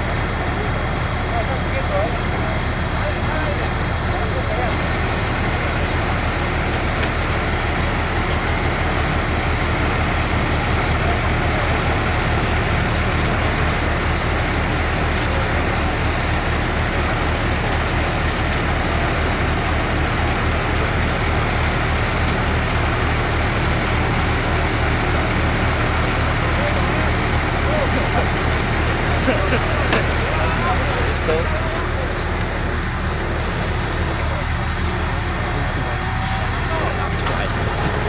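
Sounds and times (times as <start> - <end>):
engine idling: 0.0 - 38.0.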